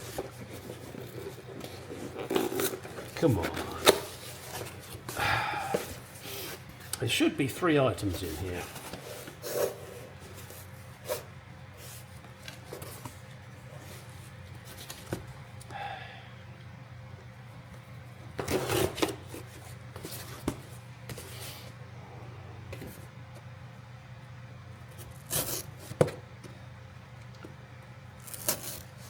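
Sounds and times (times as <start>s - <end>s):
packaging rustling and crinkling: 0.0s - 6.9s
steady low hum: 0.0s - 29.0s.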